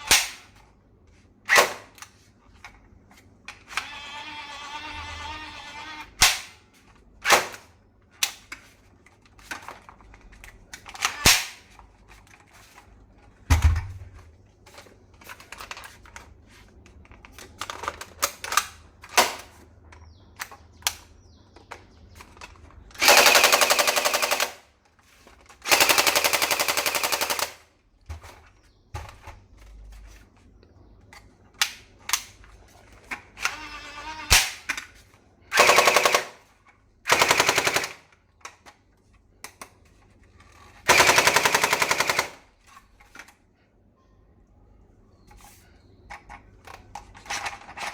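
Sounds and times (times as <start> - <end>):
toy rifle single shots: 0.0 - 0.5
toy rifle full-auto bursts: 3.7 - 6.5, 10.9 - 11.6, 23.0 - 24.7, 25.6 - 27.6, 35.5 - 36.5, 37.1 - 38.1, 40.9 - 42.5.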